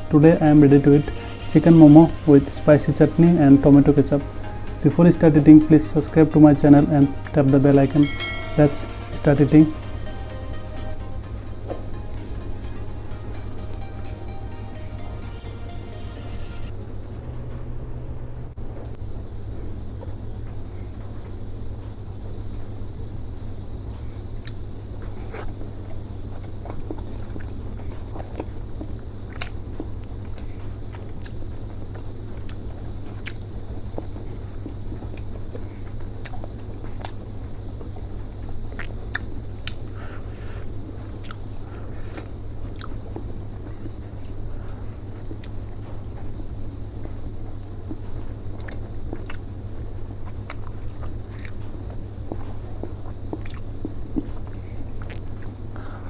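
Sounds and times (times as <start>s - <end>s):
low background hum: 0.0s - 56.0s
person chewing dumplings: 25.2s - 37.3s, 38.4s - 44.4s, 45.1s - 46.4s, 47.8s - 55.7s.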